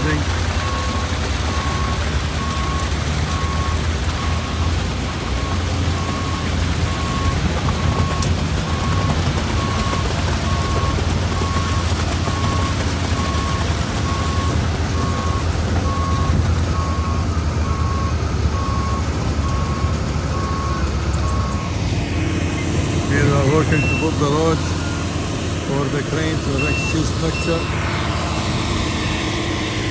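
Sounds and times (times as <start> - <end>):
low engine rumble: 0.0 - 29.9
reversing alarm beeping: 0.0 - 29.9.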